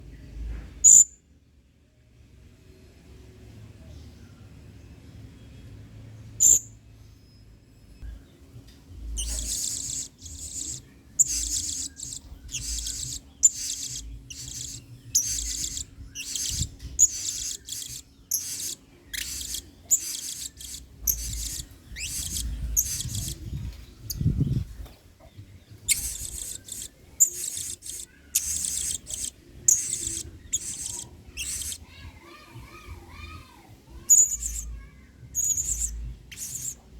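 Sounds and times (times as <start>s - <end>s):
parrot shrill chirps: 9.2s - 23.4s, 25.9s - 31.9s, 34.1s - 34.8s, 35.4s - 36.8s.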